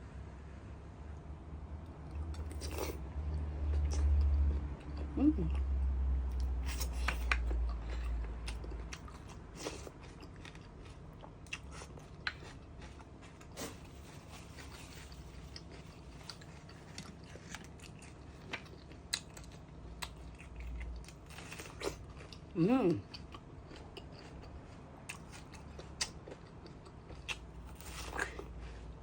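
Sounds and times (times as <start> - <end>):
chewing with wet mouth clicks: 6.3 - 13.7, 15.0 - 28.5.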